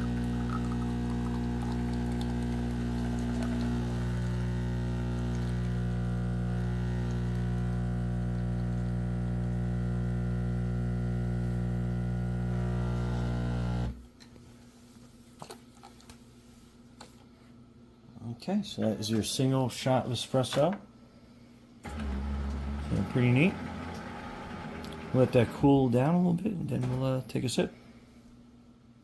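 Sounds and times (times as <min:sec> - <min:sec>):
espresso machine humming: 0:00.0 - 0:14.0, 0:21.9 - 0:25.8.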